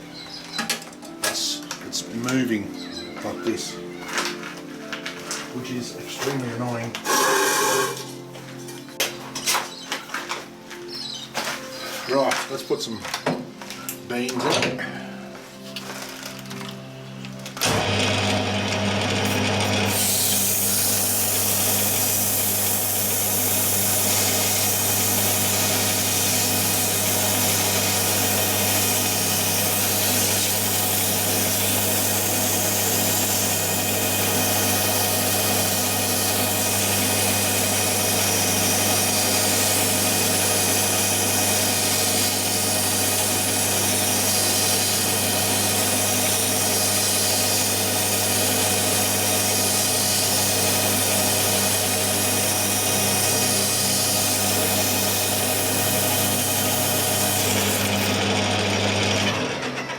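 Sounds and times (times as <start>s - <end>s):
metal lathe running: 7.0s - 8.0s, 17.6s - 59.8s.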